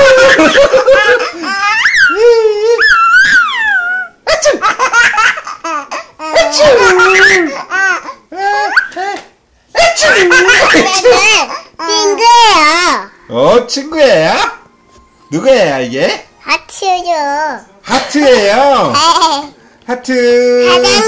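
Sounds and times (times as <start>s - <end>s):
baby laughing hard: 0.0s - 9.0s, 9.8s - 12.1s.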